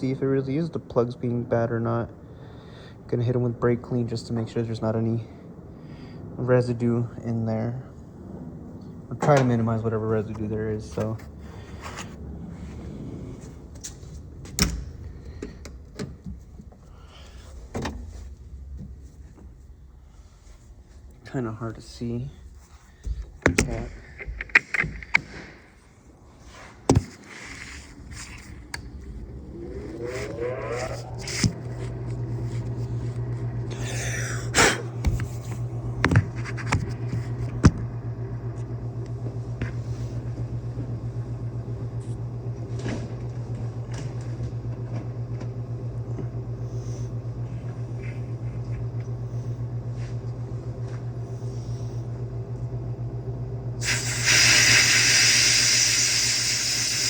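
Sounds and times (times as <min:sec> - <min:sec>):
electric motor humming: 0:26.8 - 0:41.4, 0:46.5 - 0:57.0
air hiss: 0:53.8 - 0:57.0.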